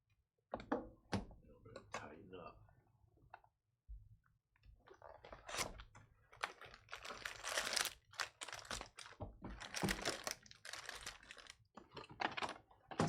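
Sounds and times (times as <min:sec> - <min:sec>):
card wrappers crinkling: 0:06.3 - 0:11.6.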